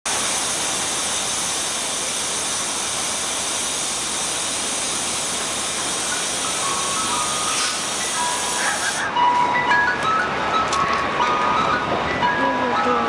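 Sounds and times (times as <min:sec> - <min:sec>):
rushing vehicle hiss: 0:00.1 - 0:09.2.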